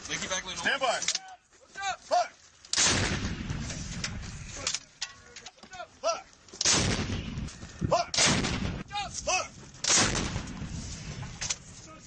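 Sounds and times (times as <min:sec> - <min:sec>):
howitzer booms: 0:02.8 - 0:04.2, 0:06.6 - 0:10.8.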